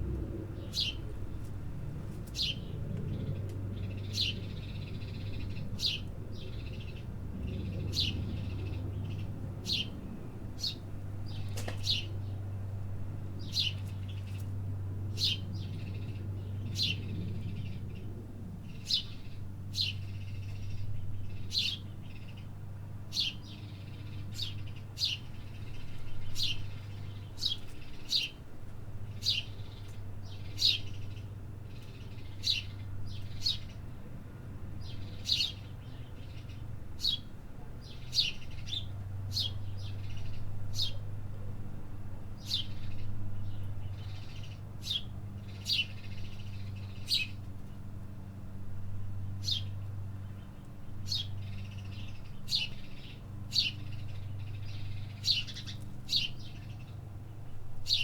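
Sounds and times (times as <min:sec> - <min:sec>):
steady low hum: 0:00.0 - 0:58.0
birds chirping: 0:42.4 - 0:47.8, 0:49.2 - 0:58.0.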